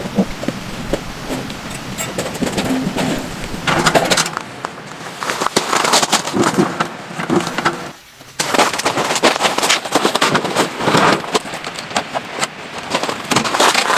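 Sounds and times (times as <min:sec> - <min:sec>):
heavy rain pattering: 0:00.0 - 0:13.9.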